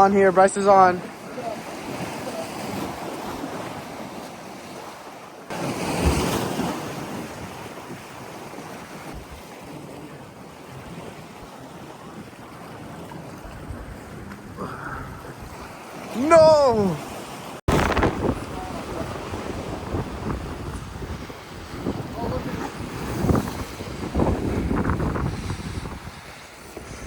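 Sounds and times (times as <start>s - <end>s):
ocean surf washing on beach: 0.0s - 27.0s
wind buffeting microphone: 8.8s - 27.0s.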